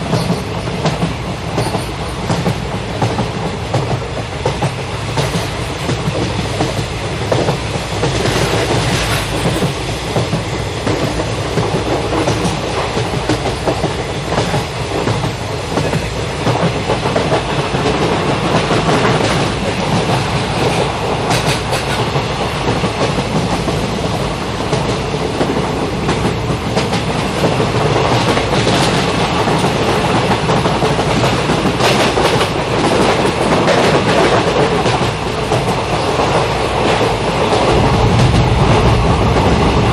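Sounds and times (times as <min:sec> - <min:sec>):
train wheels clacking on rails: 0:00.0 - 0:39.9.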